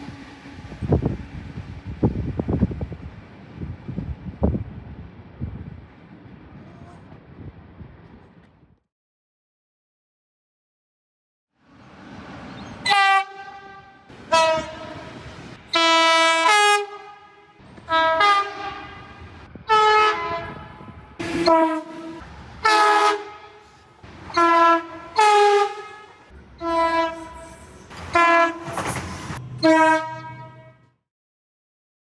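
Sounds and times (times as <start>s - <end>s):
train horn two-note blasts: 12.8s - 28.8s, 29.4s - 31.0s.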